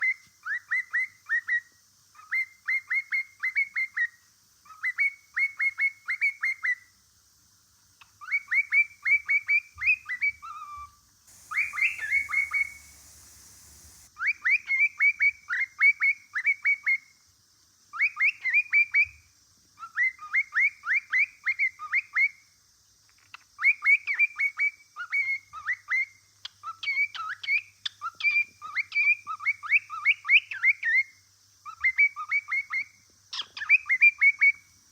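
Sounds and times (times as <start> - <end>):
cockatiel whistling chirps: 8.2 - 14.1
brief hiss: 11.3 - 14.1.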